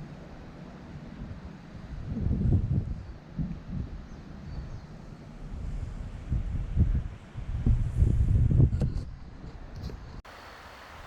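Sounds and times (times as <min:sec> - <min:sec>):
wind buffeting microphone: 0:00.3 - 0:10.2.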